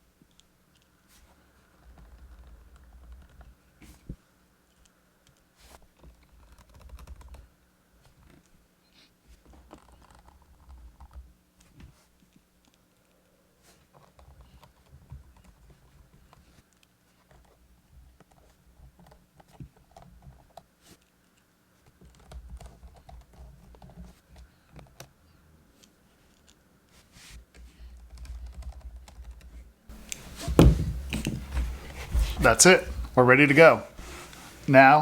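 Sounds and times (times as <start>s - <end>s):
bump: 29.9s - 35.0s
handling rumble: 29.9s - 35.0s.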